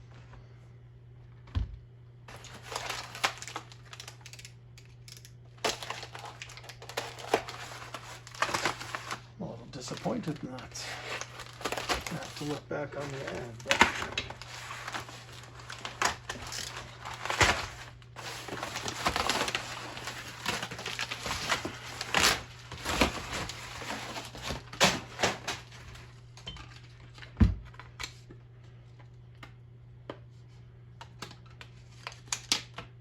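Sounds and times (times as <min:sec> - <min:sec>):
steady low hum: 0:00.0 - 0:31.8.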